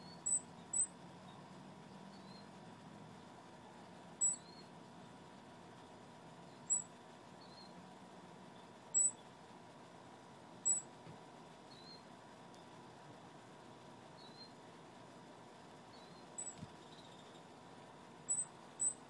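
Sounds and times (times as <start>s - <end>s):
small animal chirping: 0.0s - 0.9s, 4.2s - 4.6s, 6.6s - 7.7s, 8.9s - 9.2s, 10.6s - 10.9s, 11.7s - 12.0s, 14.2s - 14.6s, 15.9s - 17.4s, 18.3s - 19.0s.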